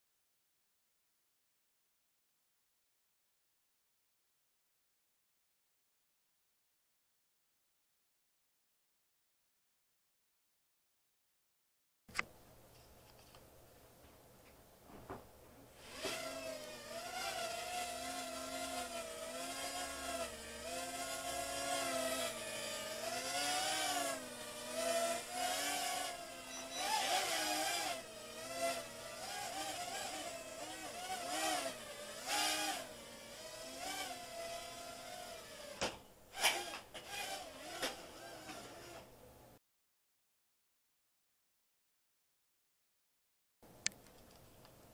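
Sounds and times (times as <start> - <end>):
quadcopter motors whining: 15.8 - 39.1.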